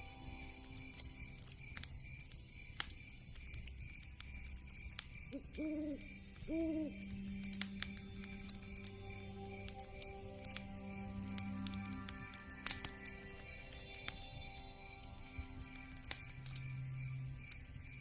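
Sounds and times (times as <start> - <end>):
wood fire crackling: 0.0 - 18.0
owl hooting: 5.3 - 7.1.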